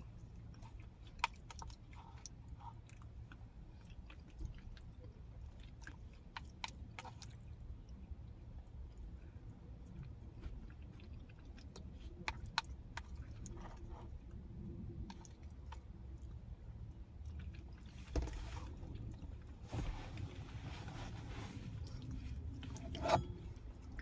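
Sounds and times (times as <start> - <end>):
person chewing: 9.9 - 14.4.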